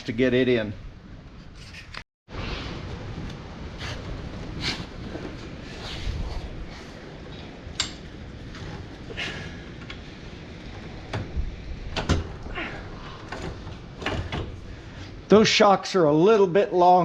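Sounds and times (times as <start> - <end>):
metal scrape: 1.4 - 2.0.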